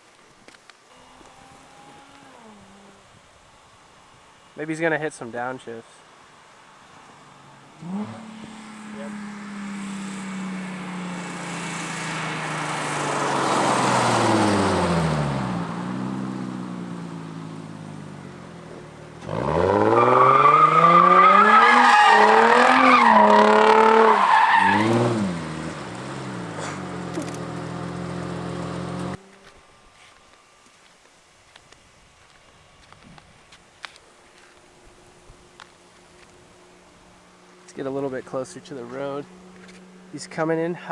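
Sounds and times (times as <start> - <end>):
car engine revving: 7.2 - 29.2.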